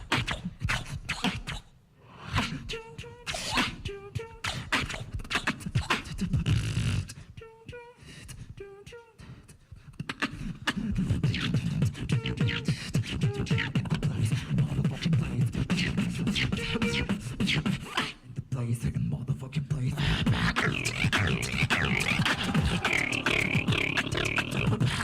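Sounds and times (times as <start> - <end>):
vocal bass beats: 10.7 - 18.5, 19.8 - 25.0
percussive mouth clicks: 20.3 - 25.0.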